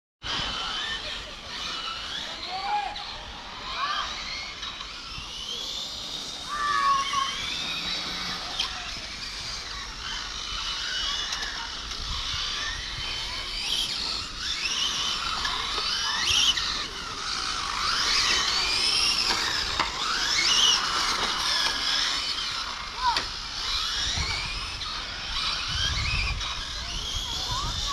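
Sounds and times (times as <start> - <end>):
electric rc car motors whining: 0.2 - 27.9.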